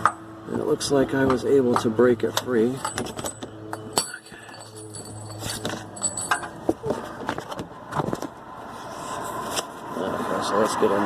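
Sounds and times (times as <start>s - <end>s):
metal hand tools clinking: 2.8s - 6.6s.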